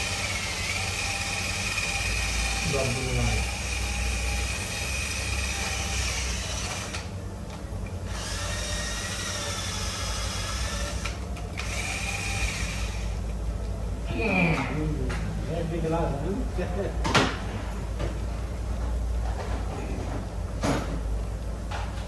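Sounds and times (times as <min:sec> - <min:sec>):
handheld power tool whirring: 0:00.0 - 0:07.1, 0:08.1 - 0:13.2
steady low rumble: 0:13.2 - 0:19.3.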